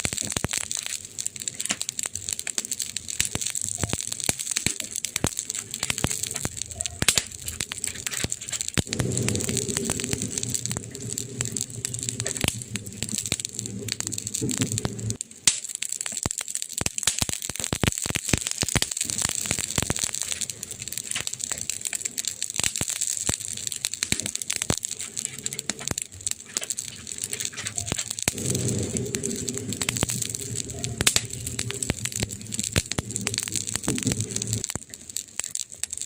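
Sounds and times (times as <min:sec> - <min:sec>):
wood fire crackling: 0:00.0 - 0:36.0
low rumble: 0:07.4 - 0:15.2, 0:27.0 - 0:34.7.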